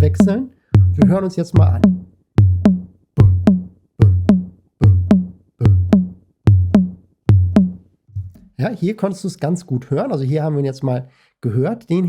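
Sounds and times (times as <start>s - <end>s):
bass drum heartbeat boom: 0.0s - 8.4s.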